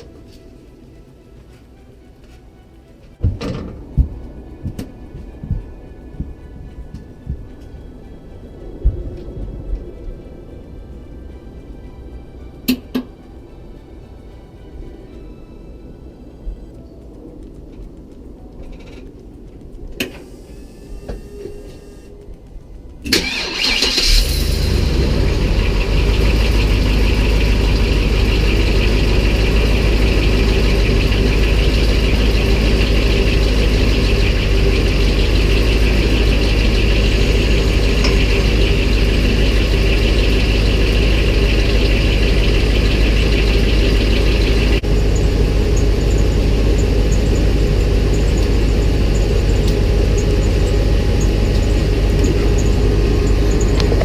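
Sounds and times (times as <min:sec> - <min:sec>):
engine idling: 0:23.0 - 0:54.0
large engine cranking and starting: 0:23.0 - 0:54.0.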